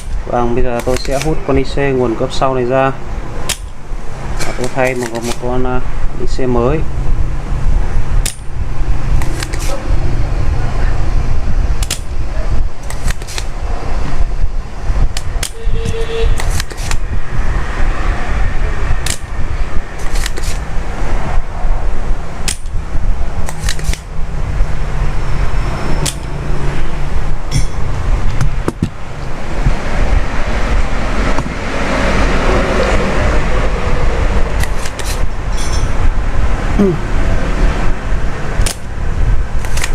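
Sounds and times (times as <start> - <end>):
tools clicking on circuit board: 0.0 - 1.4, 4.5 - 5.5, 9.2 - 9.8, 15.2 - 17.0, 19.0 - 19.3, 22.4 - 22.8, 23.4 - 24.1, 26.0 - 26.3, 39.6 - 39.9.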